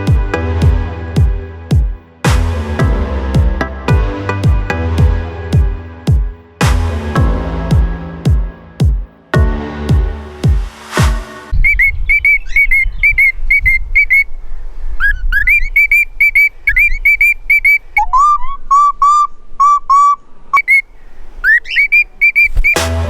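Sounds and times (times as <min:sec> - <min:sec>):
cockatiels chirping: 0:21.4 - 0:22.8.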